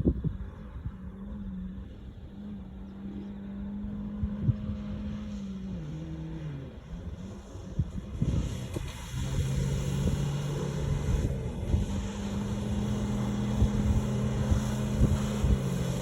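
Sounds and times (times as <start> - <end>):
vehicle engine revving: 0.0 - 16.0.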